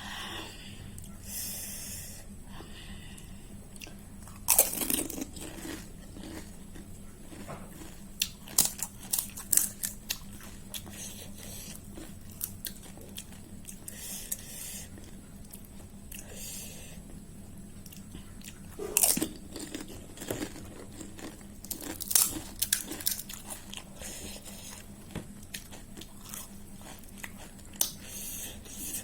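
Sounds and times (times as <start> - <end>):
crunchy chewing: 3.1 - 29.0
crisp shell crunch: 4.3 - 11.0, 19.0 - 23.8.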